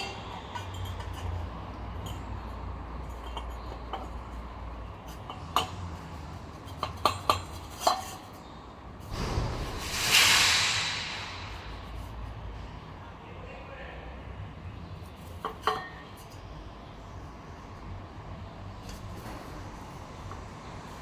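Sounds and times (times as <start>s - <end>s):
loud rushing noise: 9.1s - 12.7s.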